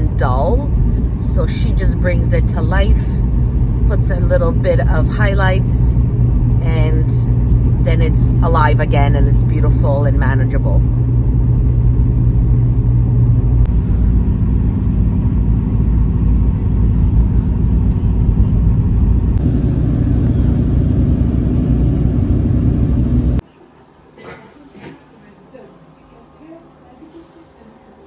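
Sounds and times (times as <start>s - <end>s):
car road and engine rumble: 0.0s - 23.4s.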